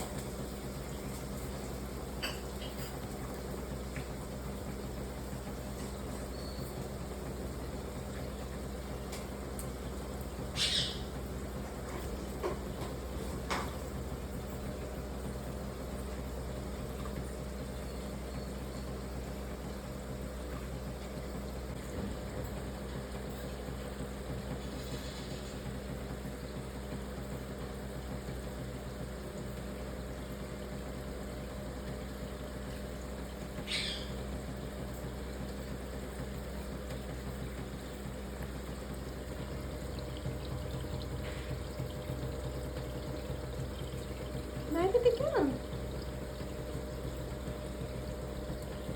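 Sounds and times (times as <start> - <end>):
low background hum: 0.0 - 48.9
parrot calls: 10.6 - 11.1, 33.7 - 34.1.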